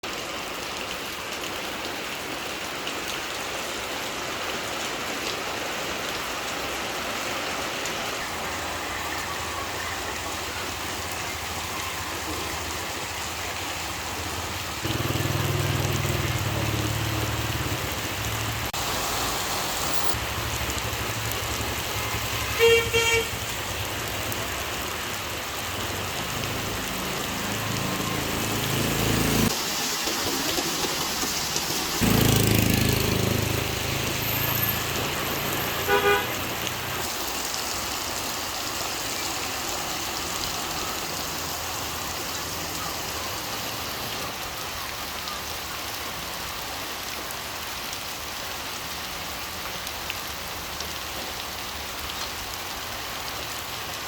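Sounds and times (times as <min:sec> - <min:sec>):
steady rain hiss: 0:00.1 - 0:54.0
vehicle engine rumbling: 0:14.2 - 0:22.6, 0:30.6 - 0:37.0
vehicle horn toot: 0:22.0 - 0:23.4, 0:35.8 - 0:36.5.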